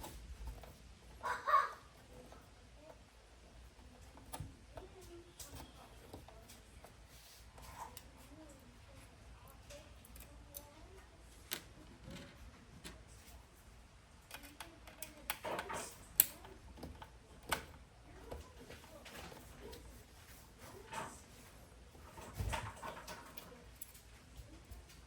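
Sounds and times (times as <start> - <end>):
clicks and taps of metal and plastic: 2.0 - 7.0, 11.4 - 13.3, 14.2 - 19.8.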